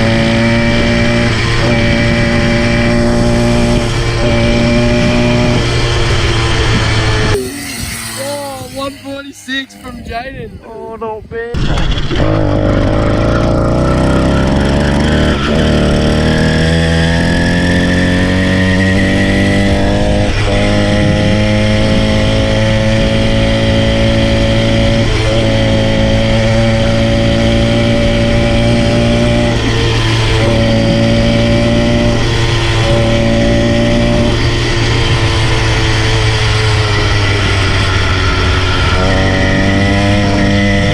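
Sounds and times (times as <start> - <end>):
small bike engine running: 0.0 - 10.8, 11.5 - 40.9.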